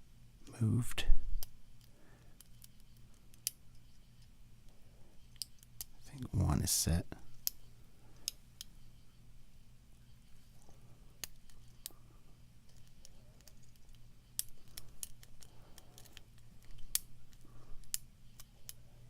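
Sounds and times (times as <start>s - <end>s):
faint low hum: 0.0s - 19.0s.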